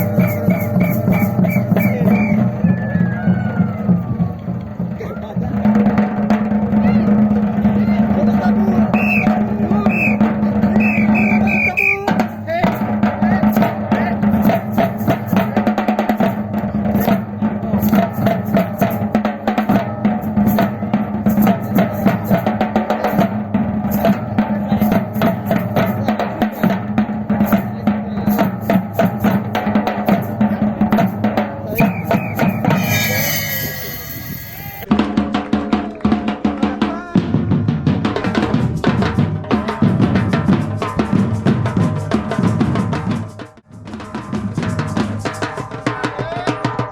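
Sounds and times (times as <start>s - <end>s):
drum ensemble playing a groove: 0.0s - 46.9s
short high notes: 31.8s - 34.9s.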